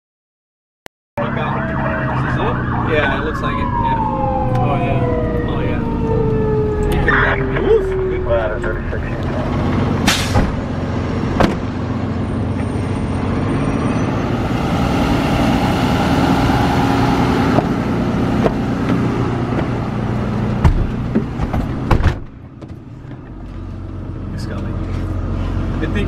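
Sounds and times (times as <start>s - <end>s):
truck engine and road noise: 1.2s - 26.0s
sharp knocks and clunks: 10.0s - 10.6s, 11.3s - 11.7s, 18.4s - 19.8s, 20.6s - 23.4s.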